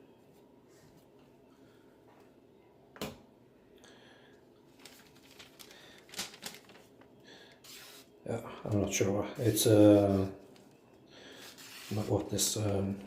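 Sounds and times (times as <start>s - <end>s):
knife slicing paper: 11.4s - 12.4s.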